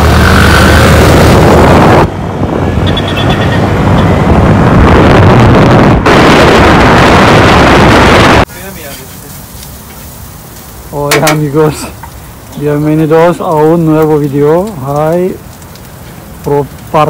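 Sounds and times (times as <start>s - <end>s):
loud rushing noise: 0.0s - 8.5s.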